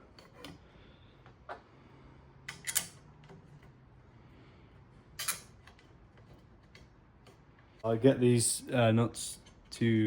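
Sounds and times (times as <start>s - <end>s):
metal bike parts clicking: 2.4s - 3.4s, 5.2s - 7.4s.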